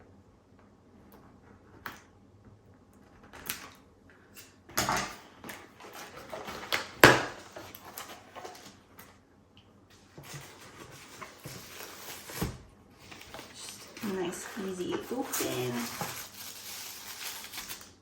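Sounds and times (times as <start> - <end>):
cardboard clicks and rustles: 5.3 - 9.2, 10.0 - 18.0
cardboard scrape: 10.2 - 17.8.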